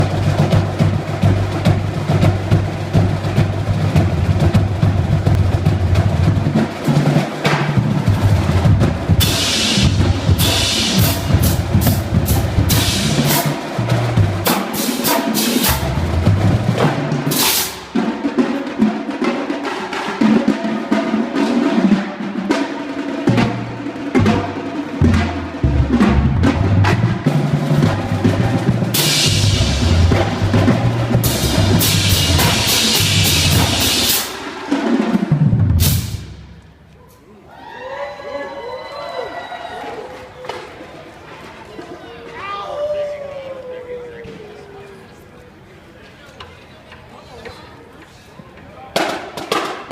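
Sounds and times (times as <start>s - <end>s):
bass drums: 0.0s - 18.2s, 23.2s - 36.9s
snare drum rolls: 0.0s - 36.8s, 48.9s - 49.9s.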